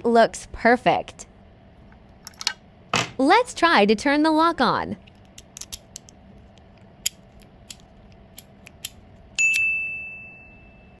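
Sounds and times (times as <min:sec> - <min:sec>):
bright high ding: 0:09.4 - 0:11.0.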